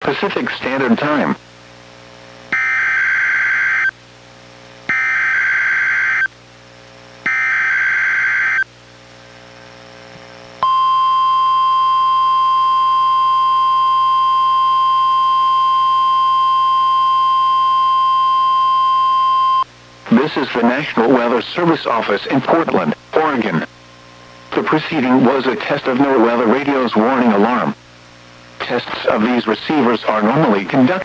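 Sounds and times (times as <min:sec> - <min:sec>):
steady warning alarm tone: 0:02.6 - 0:03.9, 0:04.9 - 0:06.3, 0:07.3 - 0:08.6, 0:10.6 - 0:19.6.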